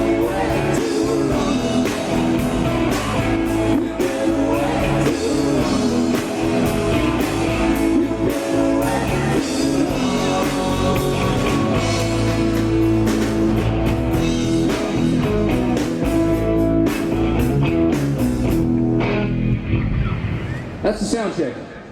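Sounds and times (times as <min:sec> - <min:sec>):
person singing: 0:00.0 - 0:12.6
rock band playing live: 0:00.0 - 0:20.8.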